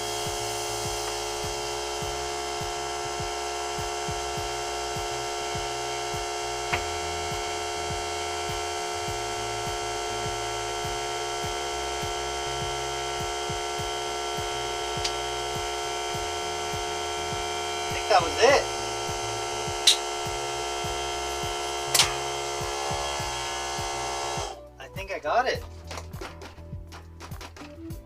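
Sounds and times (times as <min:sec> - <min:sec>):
air compressor humming: 0:00.0 - 0:24.6
tire bead snapping onto rim: 0:19.8 - 0:20.1, 0:21.9 - 0:22.3.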